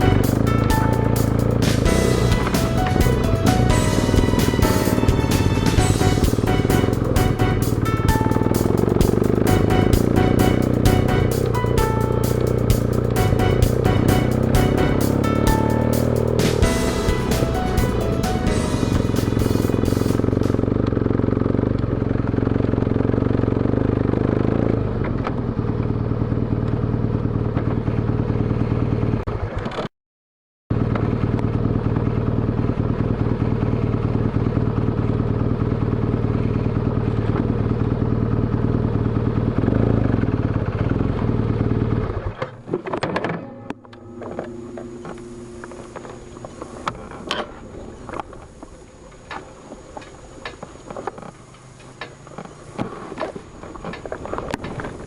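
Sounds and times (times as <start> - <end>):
motorcycle engine running: 0.0 - 29.2, 30.7 - 42.3.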